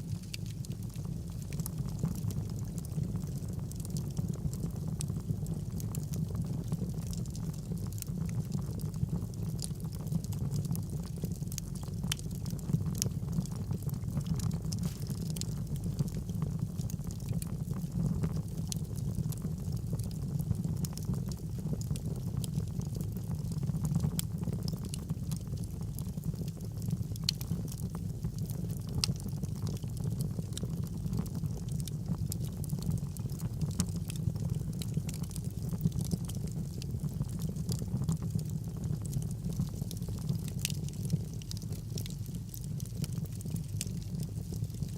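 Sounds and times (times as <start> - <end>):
fire crackles and pops: 0.0 - 44.9
fire flames burning: 0.0 - 44.9.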